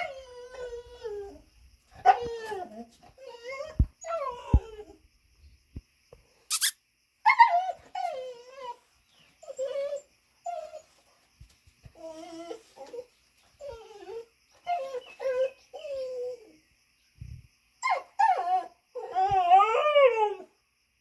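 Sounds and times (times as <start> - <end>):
dog whining and squealing: 0.0 - 1.4, 2.0 - 5.0, 6.5 - 11.0, 12.0 - 16.5, 17.8 - 20.5
brief hissing burst: 6.5 - 6.8.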